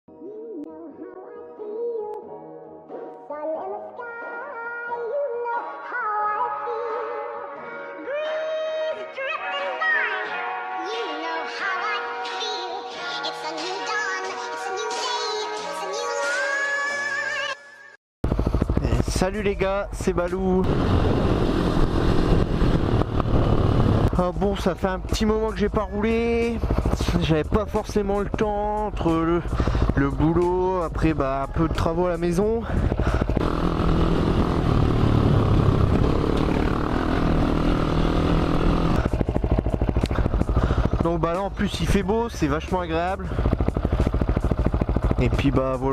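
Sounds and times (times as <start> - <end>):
quad engine revving and idling: 18.3 - 45.9.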